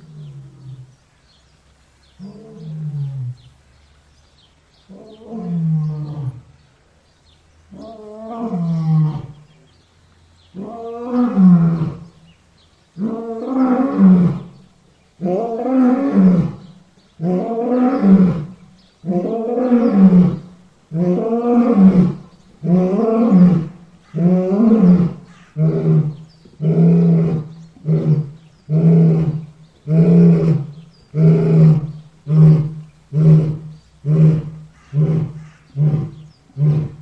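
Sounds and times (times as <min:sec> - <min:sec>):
lion roaring: 0:15.2 - 0:37.0.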